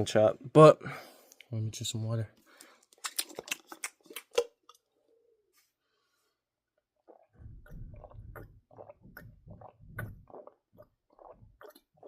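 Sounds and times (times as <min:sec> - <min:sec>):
person gulping water: 0:06.8 - 0:12.0
mouth clicks: 0:07.1 - 0:12.0.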